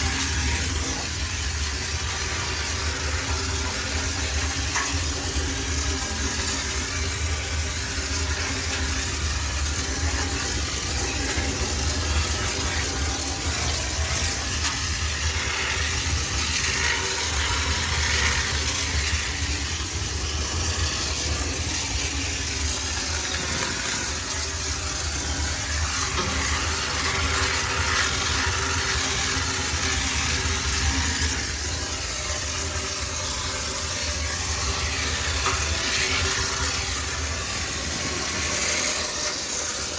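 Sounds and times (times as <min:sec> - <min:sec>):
steam cleaner humming: 0:00.0 - 0:39.9
steam hissing: 0:00.0 - 0:39.9.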